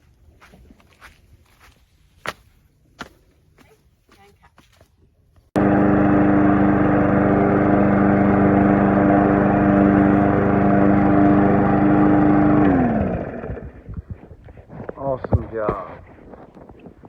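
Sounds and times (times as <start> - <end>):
lawn mower engine running: 5.6 - 14.2.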